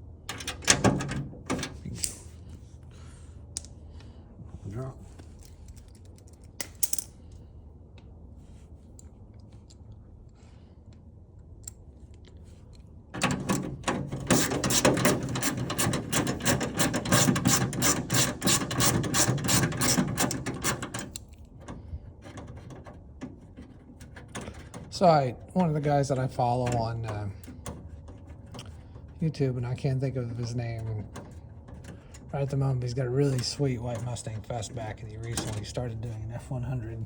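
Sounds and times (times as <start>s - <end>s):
socket ratchet clicking rapidly: 14.3s - 21.2s.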